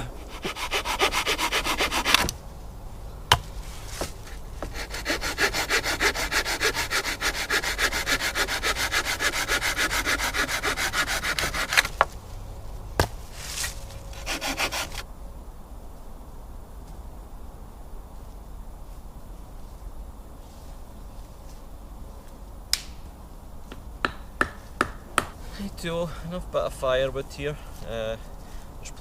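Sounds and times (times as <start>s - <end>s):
hand saw cutting wood: 0.0s - 2.3s, 4.6s - 12.1s, 13.6s - 15.0s.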